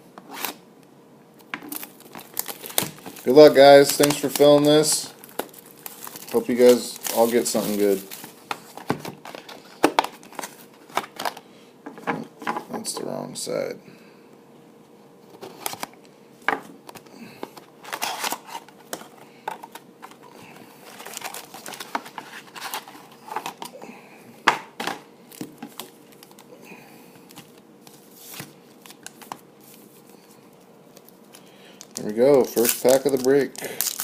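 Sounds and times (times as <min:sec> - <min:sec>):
plastic wrap crinkling and tearing: 0:01.6 - 0:11.4, 0:17.8 - 0:18.7, 0:19.7 - 0:23.7, 0:30.9 - 0:34.0.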